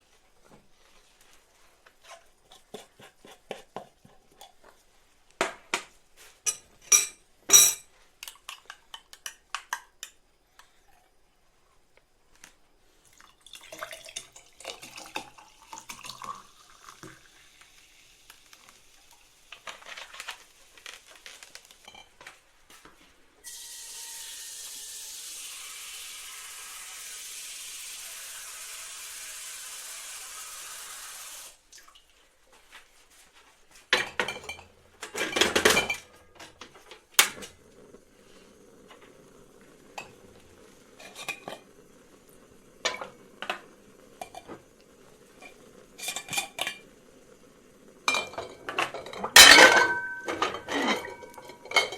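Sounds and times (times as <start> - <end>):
dishes clinking: 6.5 - 7.9, 21.8 - 22.3, 33.9 - 37.5, 41.0 - 41.7, 42.8 - 44.6, 45.4 - 46.9, 48.1 - 51.9.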